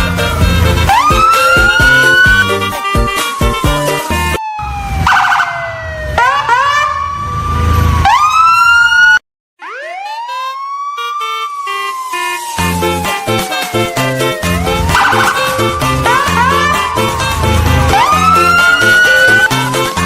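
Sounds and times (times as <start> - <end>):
background music: 0.0 - 4.4, 12.1 - 20.0
siren wailing: 0.0 - 20.0.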